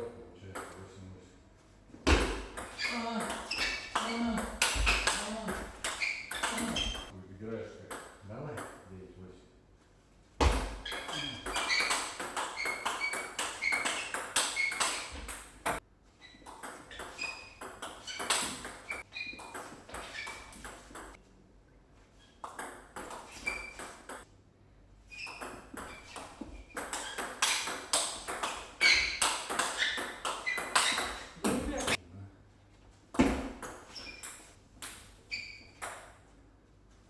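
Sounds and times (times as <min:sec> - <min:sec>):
table tennis ball hits: 0:02.0 - 0:07.1, 0:10.4 - 0:15.8, 0:16.4 - 0:21.2, 0:25.2 - 0:32.0, 0:33.2 - 0:36.2.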